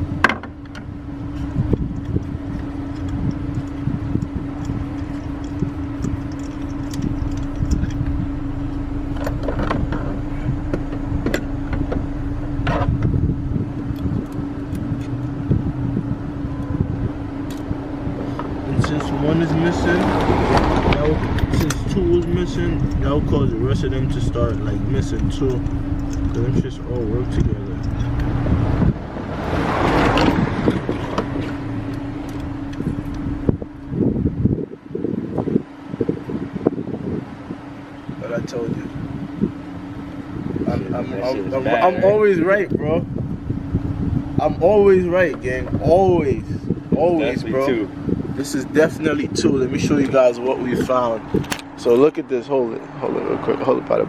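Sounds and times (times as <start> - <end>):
car engine idling with misfire: 0.0 - 54.0
wind hiss on microphone: 40.3 - 51.6.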